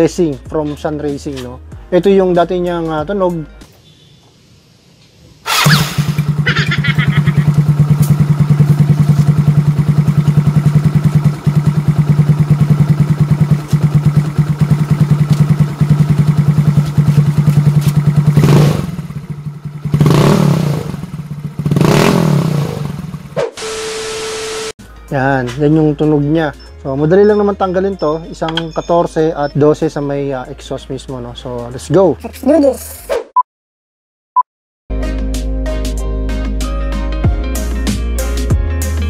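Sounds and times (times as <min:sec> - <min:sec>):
scooter engine idling and revving: 0:05.5 - 0:24.5.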